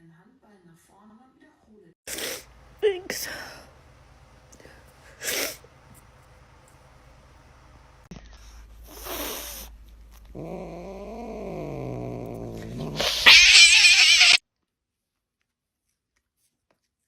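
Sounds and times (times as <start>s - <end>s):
harsh hissing: 12.7s - 14.4s
cat yowling: 12.9s - 14.4s.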